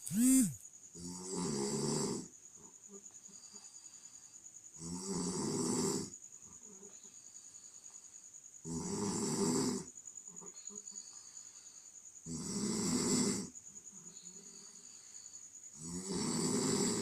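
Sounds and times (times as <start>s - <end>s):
person snoring loudly: 0.0s - 2.3s, 12.3s - 13.5s, 15.8s - 17.0s.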